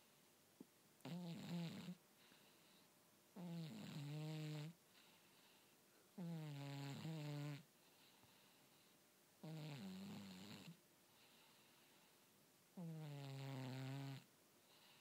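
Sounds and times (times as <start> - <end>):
cat snoring: 1.0 - 2.0, 3.4 - 4.8, 6.2 - 7.7, 9.4 - 11.5, 12.8 - 15.0.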